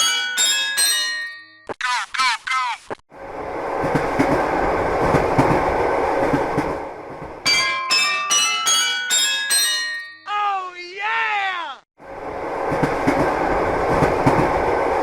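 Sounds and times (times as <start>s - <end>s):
crossing warning bell ringing: 0.0s - 1.7s, 7.5s - 10.4s
train rumble and wheel clatter: 3.1s - 7.8s, 12.0s - 15.0s.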